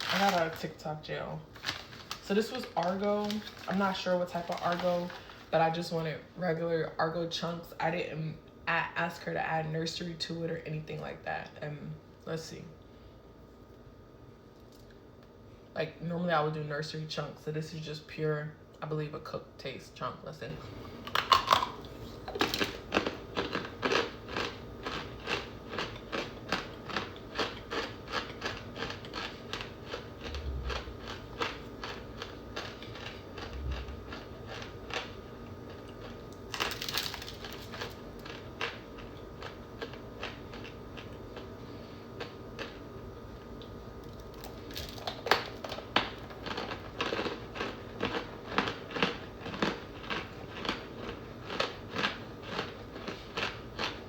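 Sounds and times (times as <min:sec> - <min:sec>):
crunchy chewing: 0:21.0 - 0:42.8, 0:44.0 - 0:54.0.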